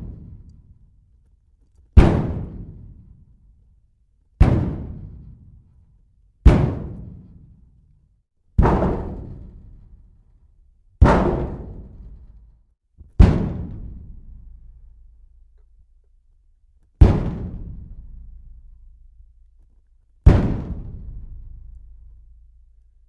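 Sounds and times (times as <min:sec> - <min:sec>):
heavy slams against metal: 0:08.6 - 0:09.8, 0:11.0 - 0:12.4, 0:13.2 - 0:14.4, 0:17.0 - 0:18.4, 0:20.2 - 0:21.7.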